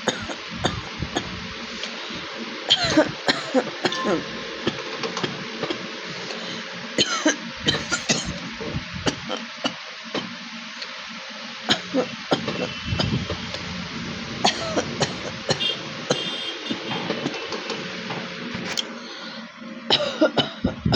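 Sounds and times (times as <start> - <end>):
person coughing: 0.0 - 1.4, 2.7 - 4.8, 7.0 - 8.4, 9.0 - 9.5, 11.7 - 13.2, 14.5 - 16.4, 19.9 - 20.9.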